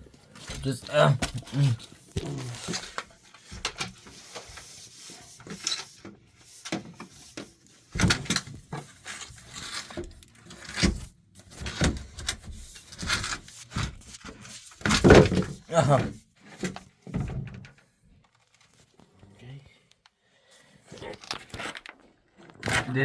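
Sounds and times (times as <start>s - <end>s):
pipe scraping against wood: 0.4s - 16.8s.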